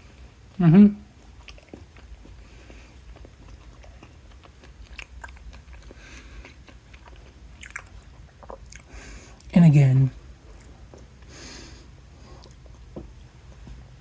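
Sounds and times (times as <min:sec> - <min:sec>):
person chewing: 0:01.1 - 0:09.5, 0:12.2 - 0:12.9.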